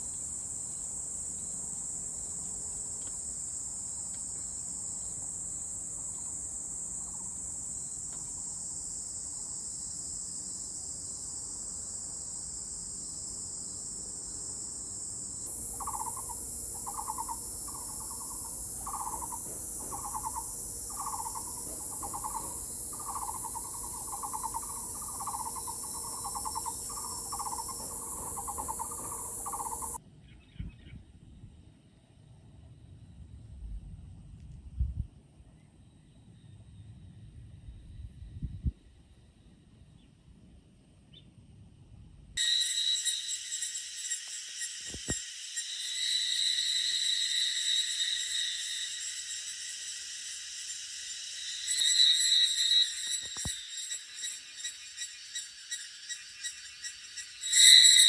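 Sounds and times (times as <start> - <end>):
cicadas buzzing: 0.0 - 30.0, 42.4 - 58.0
bird pulsed hooting call: 15.4 - 30.0, 42.4 - 58.0.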